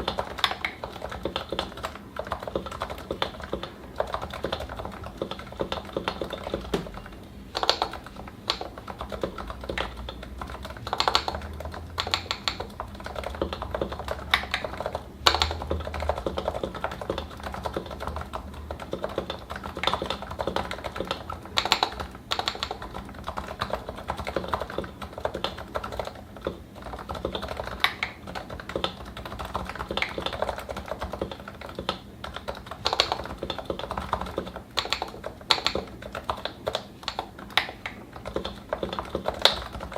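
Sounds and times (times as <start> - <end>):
keyboard typing: 0.0 - 39.9.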